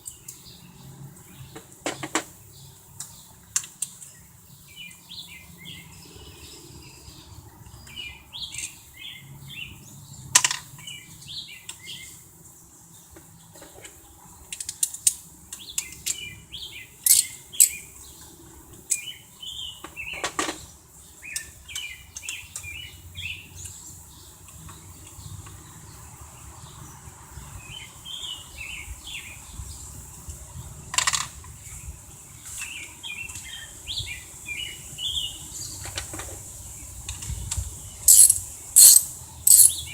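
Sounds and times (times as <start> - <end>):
small birds chirping: 0.0 - 30.8, 31.5 - 39.9
metallic tool clicks: 17.1 - 17.8, 38.1 - 39.8.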